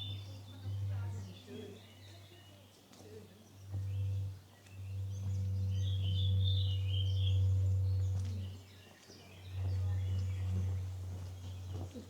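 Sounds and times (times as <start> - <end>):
low street rumble: 0.0 - 12.0
small birds chirping: 0.0 - 12.0.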